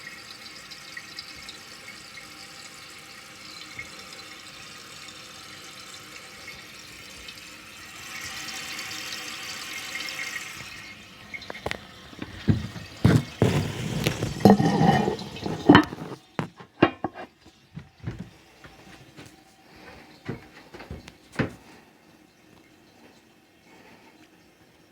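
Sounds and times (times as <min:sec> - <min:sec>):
hiss of running water: 0:00.0 - 0:17.3
toilet flushing: 0:00.0 - 0:24.9
water gurgles and drips: 0:00.0 - 0:24.9.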